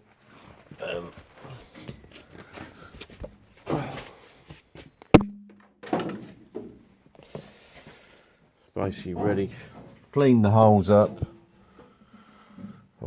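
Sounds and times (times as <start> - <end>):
handling and shuffling noises: 0.0 - 5.1
sharp metallic knock: 5.2 - 5.6.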